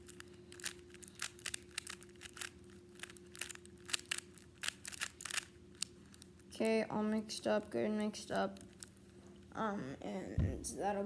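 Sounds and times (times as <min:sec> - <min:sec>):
rubik's cube clicking: 0:00.0 - 0:06.3.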